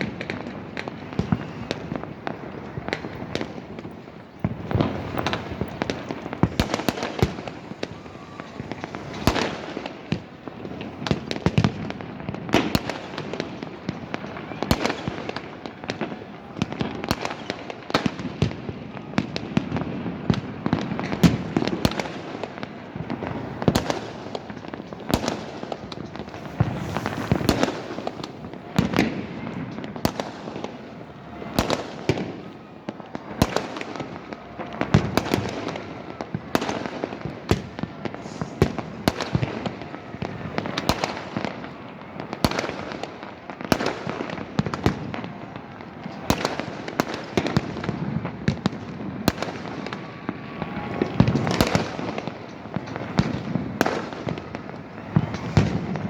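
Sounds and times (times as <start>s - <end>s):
fireworks crackling and banging: 0.0s - 56.0s.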